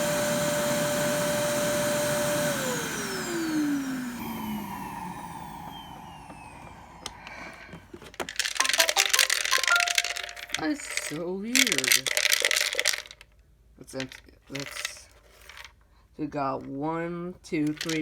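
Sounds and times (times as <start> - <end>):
suction motor winding down: 0.0 - 7.8.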